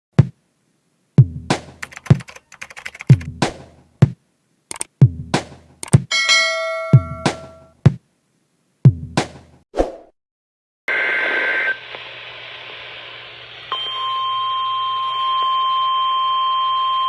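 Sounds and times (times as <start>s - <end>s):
drum machine beat: 0.2s - 0.4s, 1.2s - 6.1s, 6.9s - 8.0s, 8.9s - 9.5s
bell-like chord: 6.1s - 7.7s.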